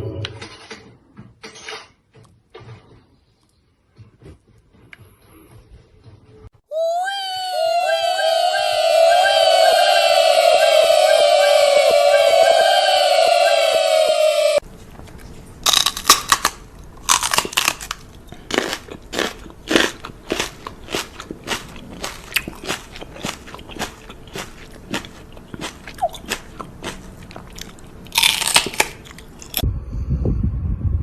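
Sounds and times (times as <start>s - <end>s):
crunchy food being chewed: 14.8s - 29.6s.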